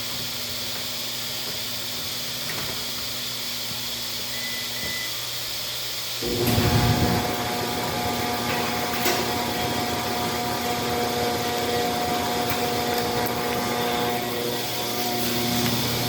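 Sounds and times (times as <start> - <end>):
tumble dryer humming: 6.2 - 16.0.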